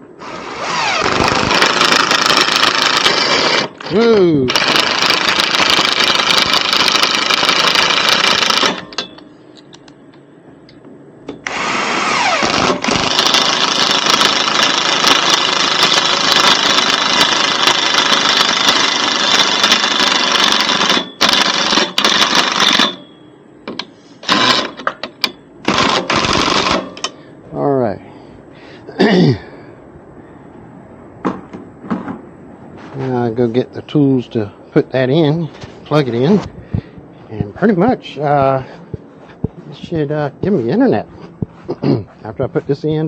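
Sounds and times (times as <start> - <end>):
power drill whining: 0.2 - 9.0, 11.4 - 23.0, 24.2 - 24.9, 25.7 - 27.1.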